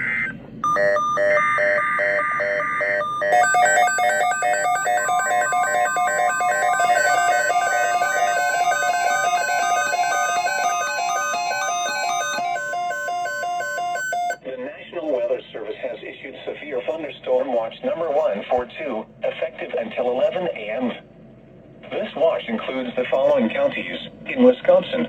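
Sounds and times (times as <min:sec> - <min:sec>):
pulsing electronic alarm beeps: 0:00.0 - 0:14.4
screeching digital data tones: 0:00.0 - 0:14.4
steady alert tone: 0:00.6 - 0:14.4.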